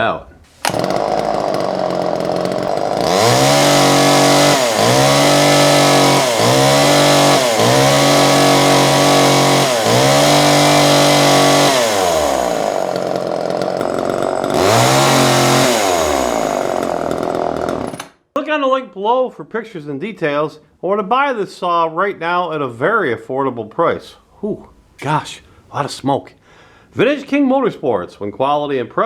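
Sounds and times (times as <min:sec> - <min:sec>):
chainsaw revving: 0:00.6 - 0:18.1.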